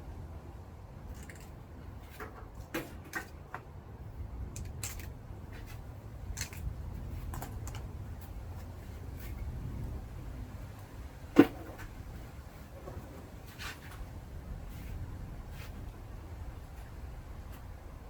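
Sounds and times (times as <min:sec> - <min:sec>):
low steady rumble: 0:00.0 - 0:02.0, 0:03.7 - 0:18.0
clicks snips and knocks of wire: 0:04.5 - 0:07.9.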